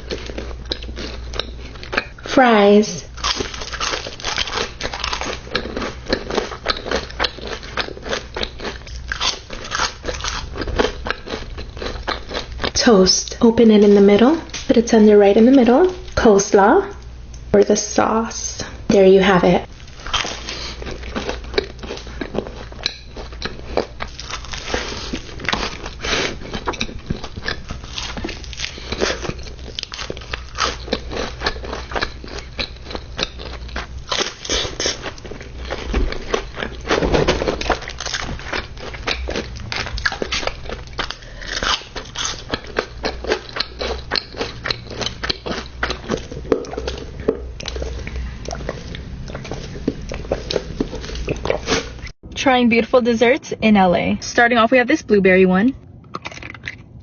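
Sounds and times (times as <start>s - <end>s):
crunchy bites and chewing: 0.0s - 2.3s, 3.1s - 12.8s, 19.7s - 52.1s, 56.0s - 57.0s
low steady hum: 0.0s - 57.0s.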